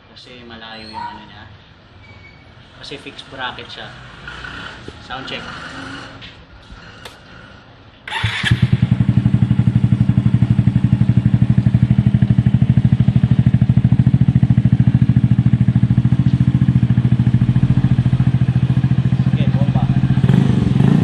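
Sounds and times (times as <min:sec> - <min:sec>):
scooter engine starting and idling: 0:08.1 - 0:21.0.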